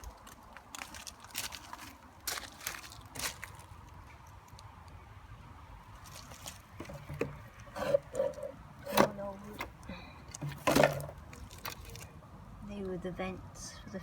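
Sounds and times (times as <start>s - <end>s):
footsteps: 6.0s - 9.7s.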